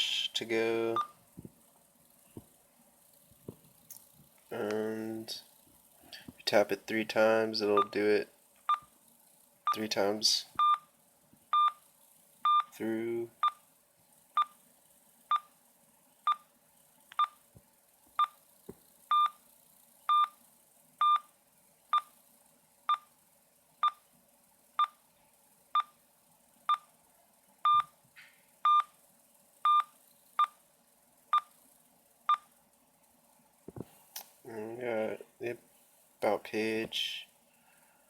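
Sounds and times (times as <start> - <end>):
morse code beeps: 21.0 - 21.3, 28.7 - 28.9, 29.7 - 30.6.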